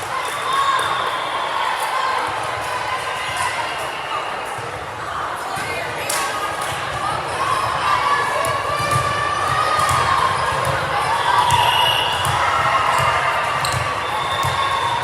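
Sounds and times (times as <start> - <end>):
voices and crowd noise echoing: 0.0 - 15.0
ball bouncing on gym floor: 8.4 - 10.9, 11.5 - 14.7.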